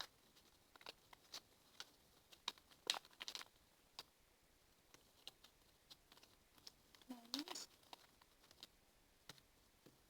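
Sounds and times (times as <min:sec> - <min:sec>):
paper folding and crinkling: 0:00.0 - 0:04.1.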